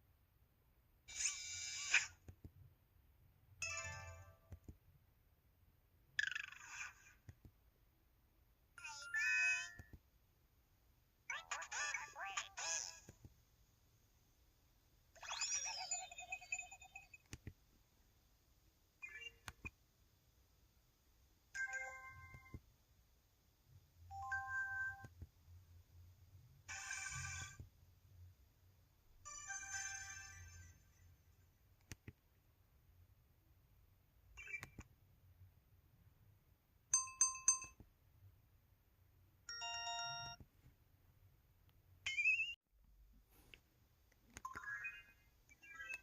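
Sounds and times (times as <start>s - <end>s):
click: 31.8s - 32.2s, 34.5s - 34.9s.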